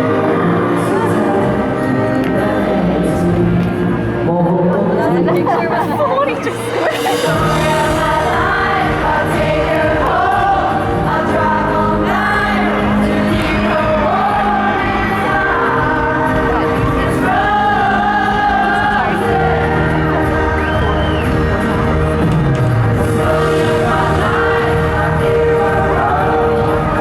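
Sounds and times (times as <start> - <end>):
pop band playing live: 0.0 - 27.0
men singing long notes: 7.0 - 22.2, 22.9 - 27.0.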